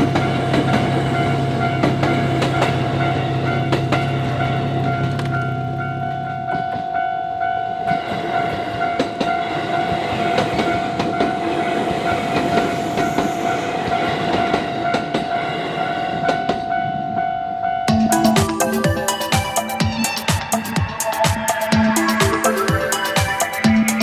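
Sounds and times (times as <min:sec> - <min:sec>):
train wheels clattering over rail joints: 0:00.0 - 0:05.6
crossing alarm ringing: 0:00.0 - 0:08.1, 0:16.2 - 0:24.0.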